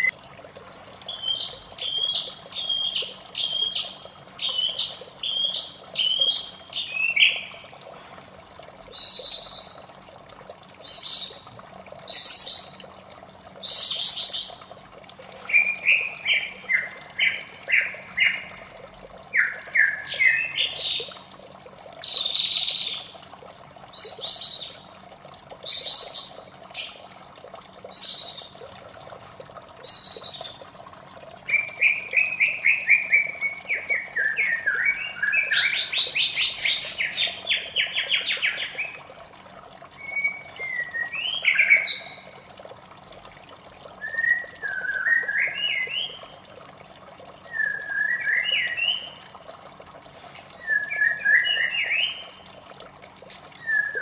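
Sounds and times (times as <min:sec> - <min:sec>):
faint trickle of water: 0:00.0 - 0:54.0
bird whistling song: 0:01.1 - 0:07.5, 0:08.9 - 0:09.8, 0:15.5 - 0:18.4, 0:19.3 - 0:21.0, 0:24.0 - 0:24.8, 0:27.9 - 0:28.6, 0:29.8 - 0:30.6, 0:31.5 - 0:38.9, 0:40.0 - 0:42.3, 0:44.0 - 0:46.2, 0:47.5 - 0:49.2, 0:50.6 - 0:52.3, 0:53.6 - 0:54.0.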